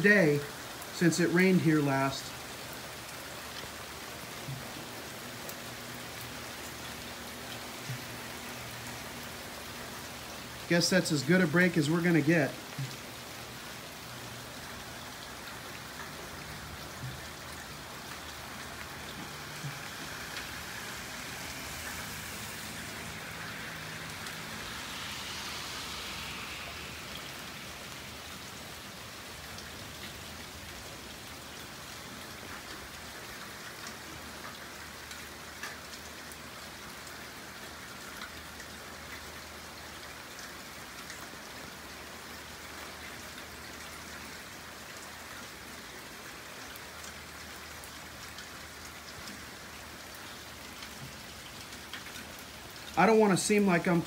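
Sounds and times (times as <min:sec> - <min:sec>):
heavy rain falling: 0:00.0 - 0:54.0
raindrops ticking on hard surfaces: 0:00.0 - 0:54.0.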